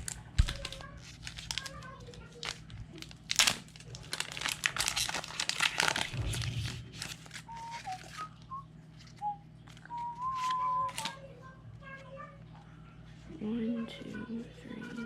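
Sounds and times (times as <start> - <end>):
foil wrapper crinkling and tearing: 0.0 - 11.2.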